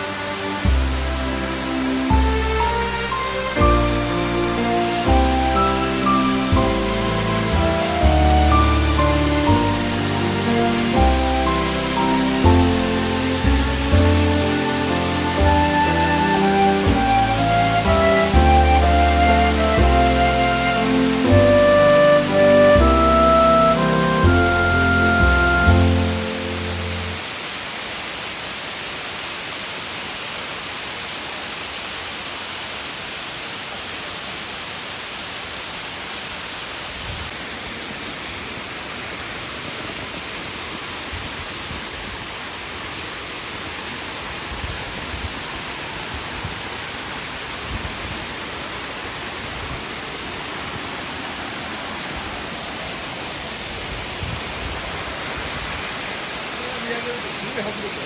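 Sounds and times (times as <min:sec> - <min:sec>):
waterfall rushing: 0:00.0 - 0:58.0.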